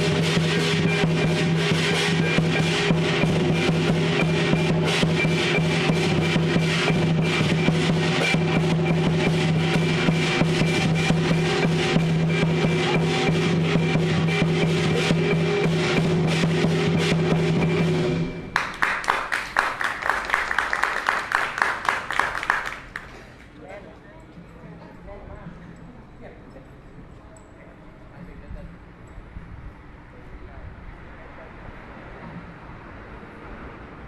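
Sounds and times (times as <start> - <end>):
steady low ring: 0.0 - 18.8
cymbals clashing: 0.0 - 19.1
drum beating: 0.0 - 23.2.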